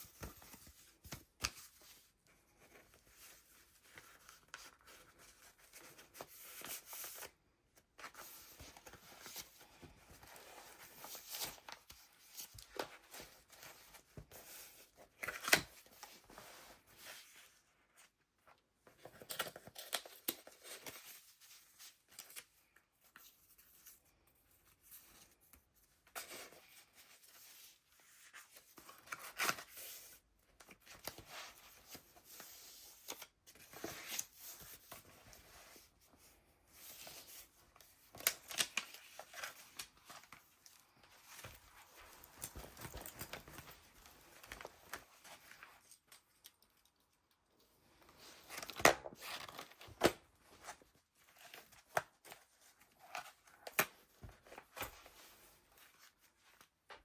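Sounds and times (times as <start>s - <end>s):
paper rustling and crinkling: 18.8s - 57.0s
page flips: 38.1s - 46.0s.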